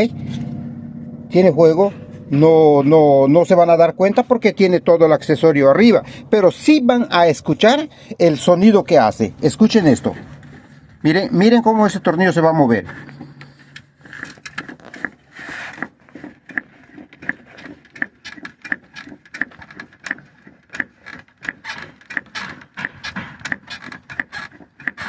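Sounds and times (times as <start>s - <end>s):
shock absorber mount ticking: 13.2s - 25.0s
rubbing: 14.0s - 25.0s.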